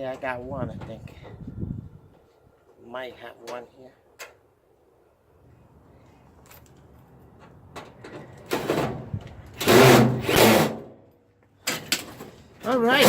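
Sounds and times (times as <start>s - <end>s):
power drill driving a screw: 9.6s - 10.8s.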